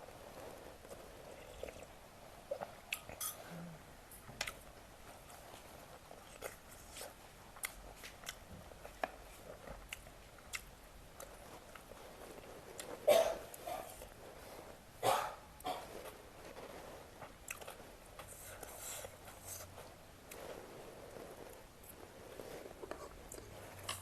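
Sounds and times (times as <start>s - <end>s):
person chewing and crunching: 4.4s - 14.1s, 15.6s - 19.7s.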